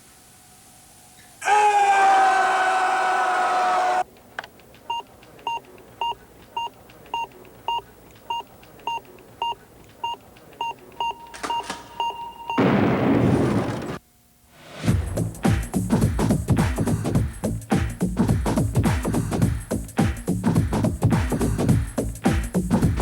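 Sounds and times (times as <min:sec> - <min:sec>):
short high electronic beeps: 0:04.9 - 0:12.6.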